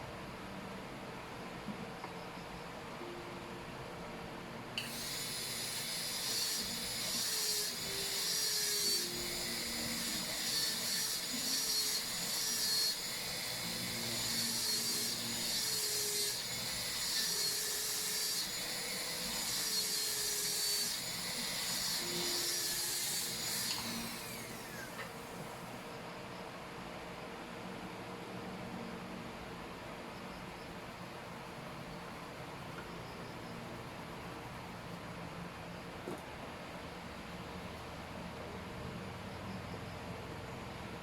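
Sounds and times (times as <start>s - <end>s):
dental drill whining: 4.8s - 25.8s.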